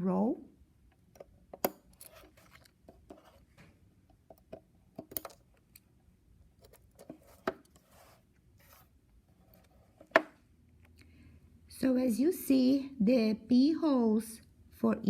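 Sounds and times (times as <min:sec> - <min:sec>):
tweezers scraping plastic: 0:01.2 - 0:03.5, 0:06.6 - 0:10.3.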